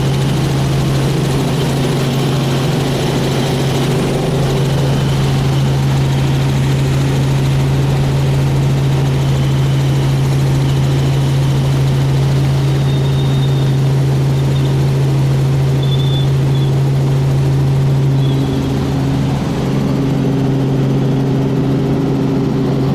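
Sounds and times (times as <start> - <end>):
helicopter running: 0.0 - 22.9.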